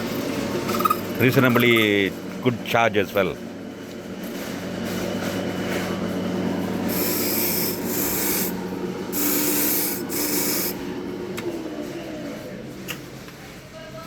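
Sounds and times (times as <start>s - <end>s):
key cutting machine motor hum: 6.0s - 12.9s.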